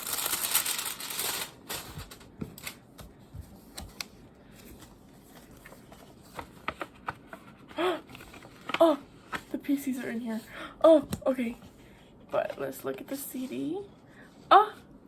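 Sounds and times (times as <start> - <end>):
packaging rustling: 0.0 - 3.0
cardboard and cards clicking: 5.6 - 9.5.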